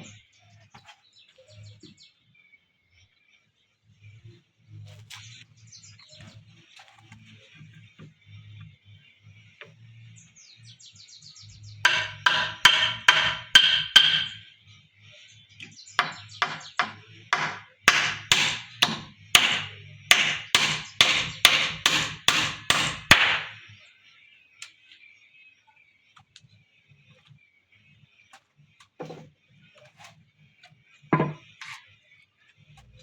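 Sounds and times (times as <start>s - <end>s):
hammer driving nails into wood: 11.9s - 14.4s, 16.0s - 23.6s.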